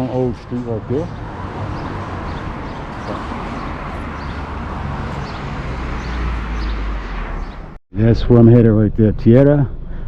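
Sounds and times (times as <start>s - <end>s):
traffic noise: 0.0s - 7.8s
vehicle rumble: 0.0s - 10.0s.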